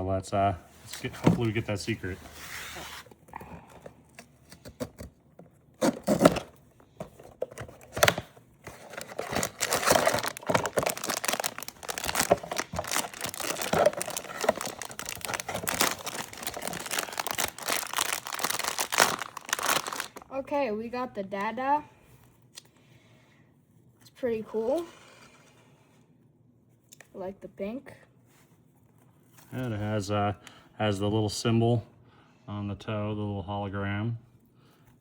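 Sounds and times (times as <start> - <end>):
packaging ripping: 5.8 - 6.5, 7.6 - 20.3
wrapping crinkling: 7.4 - 20.3.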